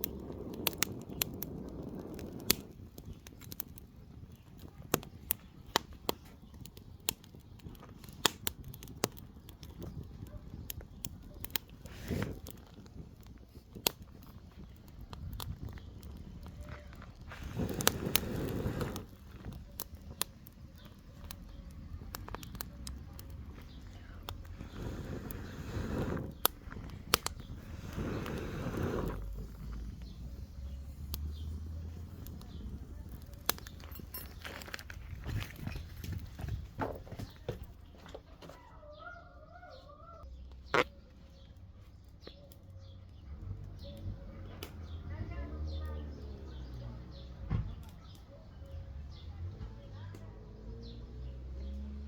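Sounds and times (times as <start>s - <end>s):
campfire crackling and popping: 0.0s - 38.2s, 40.2s - 52.0s
small birds chirping: 0.0s - 52.0s.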